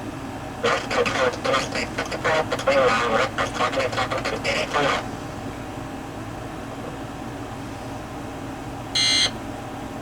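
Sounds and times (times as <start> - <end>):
low hum and hiss: 0.0 - 10.0
electronic alert beep: 9.0 - 9.3.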